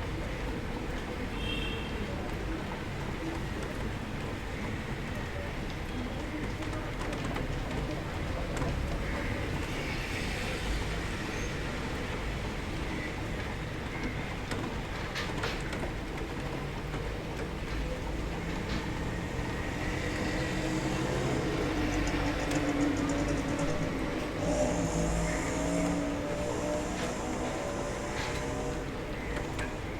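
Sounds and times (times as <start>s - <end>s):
low rumble of traffic: 0.0s - 29.9s
steady rain: 0.0s - 29.9s
vehicle engine: 18.4s - 29.9s.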